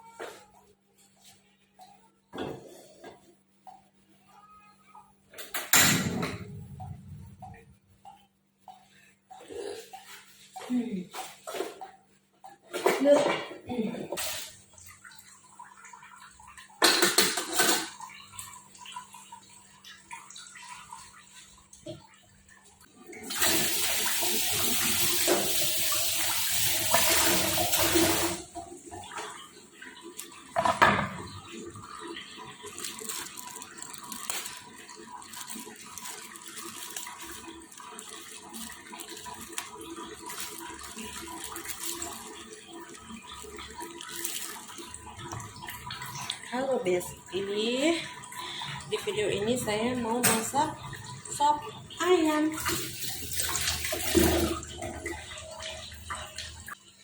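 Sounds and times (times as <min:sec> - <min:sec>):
kitchen knocks and clatter: 0:05.4 - 0:06.9, 0:16.7 - 0:18.0, 0:30.4 - 0:31.6, 0:50.2 - 0:50.6
water running from tap: 0:08.6 - 0:57.0.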